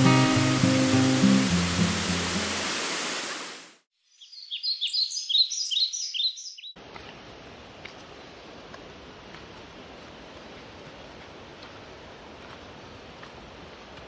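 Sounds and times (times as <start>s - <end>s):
rushing water-like noise: 0.0s - 3.8s, 6.8s - 14.0s
flowing stream hiss: 0.0s - 3.9s, 6.8s - 14.0s
small bird chirping: 4.1s - 6.8s.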